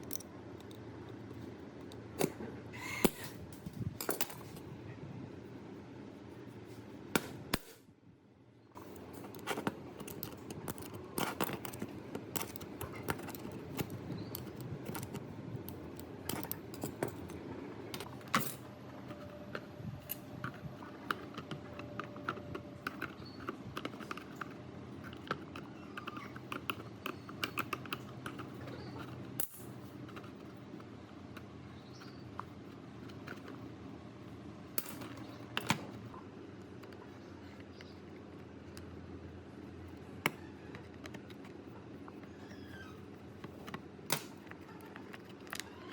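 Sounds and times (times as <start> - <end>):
steady low hum: 0.0 - 45.9
metal parts and tools clinking: 3.6 - 4.6, 8.9 - 17.4, 34.8 - 35.8.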